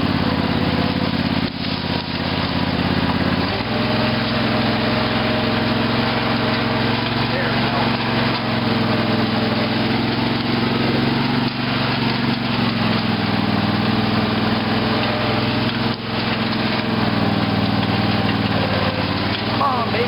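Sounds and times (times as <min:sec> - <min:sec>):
lawn tractor engine running: 0:00.0 - 0:20.0.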